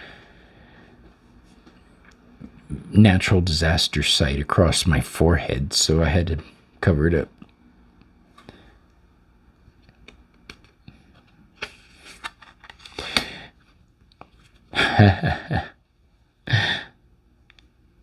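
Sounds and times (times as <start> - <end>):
cards clicking and rustling: 9.8 - 14.7.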